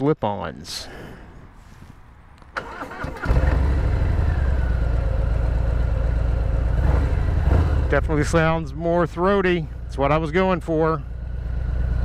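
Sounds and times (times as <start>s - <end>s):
motorcycle starter cranking: 2.6s - 4.2s
motorcycle engine idling: 2.6s - 12.0s.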